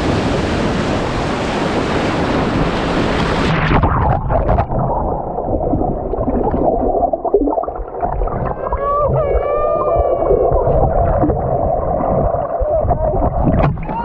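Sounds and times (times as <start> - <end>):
breaking surf rushing: 0.0 - 4.9
muffled underwater gurgling: 3.4 - 14.0.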